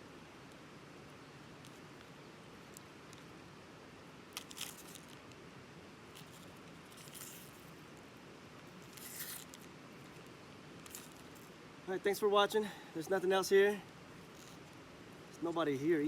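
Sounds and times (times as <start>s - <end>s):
faint steady hiss: 0.0s - 16.0s.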